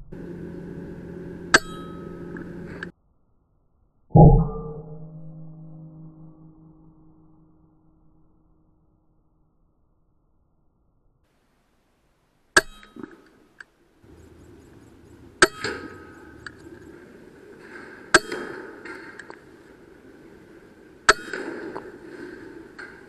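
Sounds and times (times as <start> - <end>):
brief ringing: 1.5 - 2.5.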